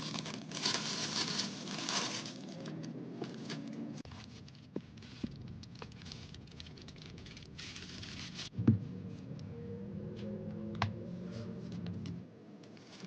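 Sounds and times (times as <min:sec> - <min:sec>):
packaging rustle: 0:00.0 - 0:08.5.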